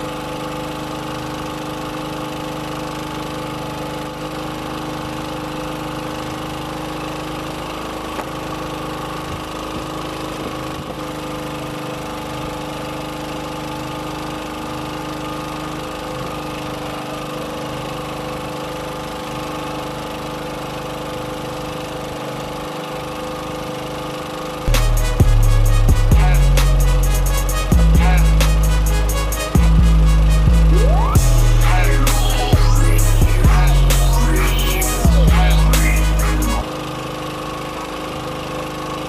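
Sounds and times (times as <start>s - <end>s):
boat engine running: 1.4s - 13.5s, 24.2s - 38.4s.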